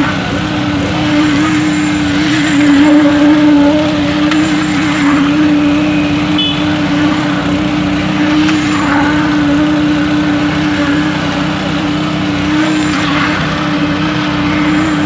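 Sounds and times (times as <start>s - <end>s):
construction machinery engine humming: 0.0s - 15.0s.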